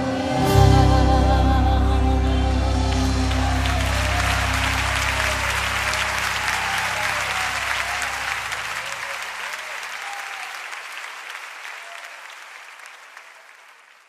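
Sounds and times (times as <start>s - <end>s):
voices calling out: 2.0s - 10.8s
audience applauding: 2.6s - 14.0s.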